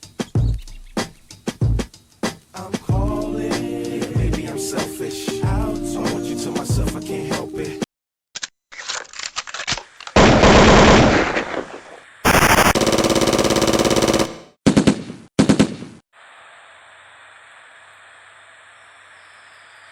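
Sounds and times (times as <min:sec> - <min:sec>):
machine-gun fire: 0:10.2 - 0:15.7.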